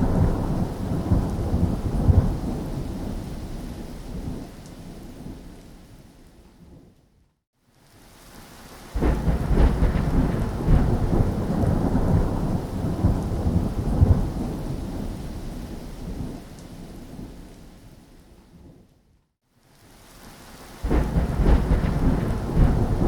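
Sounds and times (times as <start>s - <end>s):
thunder rumbling: 0.0s - 5.4s, 9.0s - 17.4s, 20.8s - 23.0s
steady rain: 0.0s - 7.0s, 7.6s - 23.0s.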